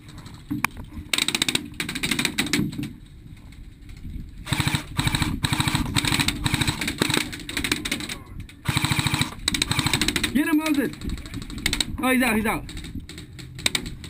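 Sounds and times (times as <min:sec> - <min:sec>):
airsoft guns firing full auto: 0:04.4 - 0:11.9.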